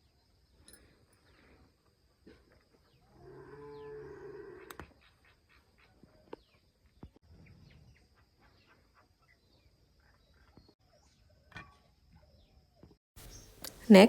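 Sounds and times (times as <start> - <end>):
small birds chirping: 12.2 - 14.0.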